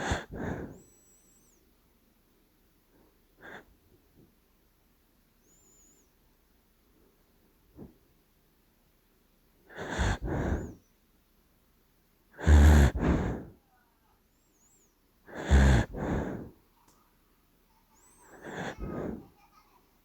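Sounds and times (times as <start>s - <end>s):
dog snoring: 0.0s - 0.8s, 9.7s - 10.8s, 12.4s - 13.6s, 15.3s - 16.6s, 18.3s - 19.2s.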